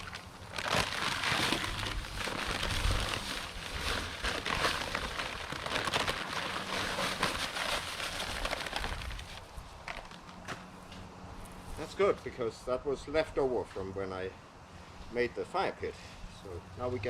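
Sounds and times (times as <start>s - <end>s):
dry concrete mix pouring: 0.0s - 9.4s.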